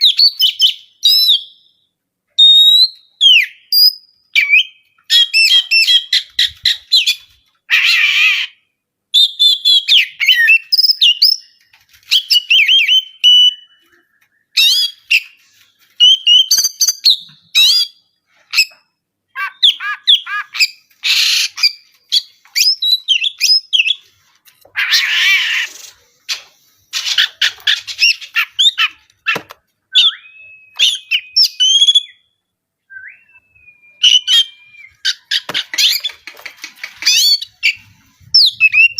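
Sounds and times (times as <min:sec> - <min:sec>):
songbird singing whistled phrases: 0:00.0 - 0:01.8, 0:02.4 - 0:07.3, 0:09.1 - 0:15.4, 0:16.0 - 0:18.8, 0:19.4 - 0:24.0, 0:29.9 - 0:36.1, 0:37.0 - 0:38.9
long held bird whistles: 0:00.0 - 0:06.2, 0:12.1 - 0:15.4, 0:29.9 - 0:35.4, 0:37.0 - 0:38.9
harsh rasping bird calls: 0:09.7 - 0:32.2, 0:34.0 - 0:38.9.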